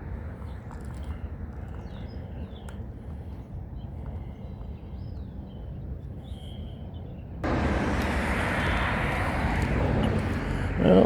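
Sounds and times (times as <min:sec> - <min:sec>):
loud steady rushing noise: 0:07.4 - 0:11.0
low rumble: 0:07.4 - 0:11.0.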